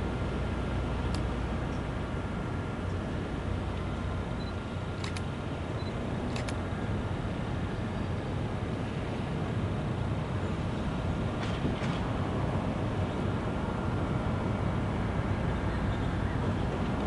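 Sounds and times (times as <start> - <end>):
diesel locomotive rumbling: 0.0 - 17.0.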